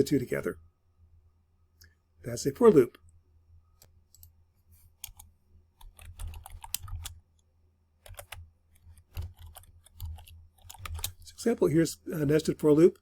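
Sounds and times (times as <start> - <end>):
keyboard typing: 5.0 - 7.2, 8.0 - 11.2.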